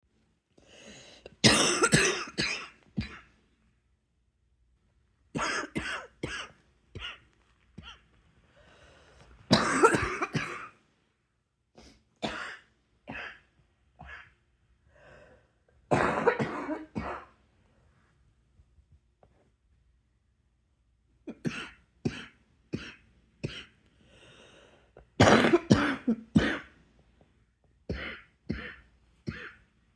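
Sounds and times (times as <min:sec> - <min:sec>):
person coughing: 0:01.3 - 0:03.4, 0:05.4 - 0:07.2, 0:09.5 - 0:10.8, 0:12.2 - 0:14.4, 0:15.9 - 0:17.4, 0:25.2 - 0:26.7, 0:27.9 - 0:29.6.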